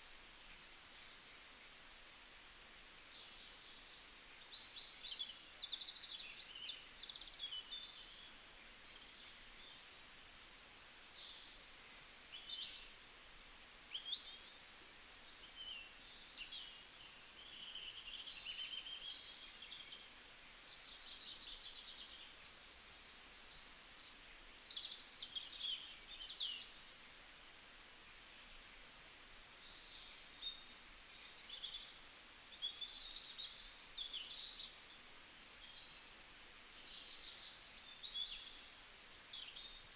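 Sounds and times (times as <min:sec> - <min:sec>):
faint steady hiss: 0:00.0 - 0:39.9.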